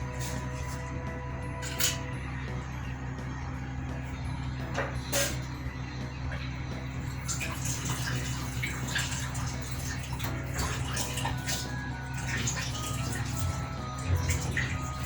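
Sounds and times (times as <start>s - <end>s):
microwave oven humming: 0.0s - 15.0s
noodles bubbling and popping: 6.4s - 15.0s.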